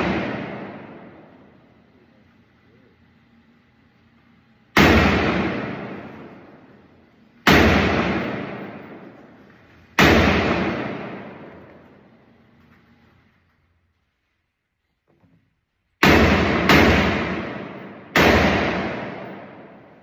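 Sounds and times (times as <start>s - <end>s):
gunshots with echo: 0.0s - 1.6s, 4.8s - 6.8s, 7.4s - 12.1s, 16.0s - 20.0s.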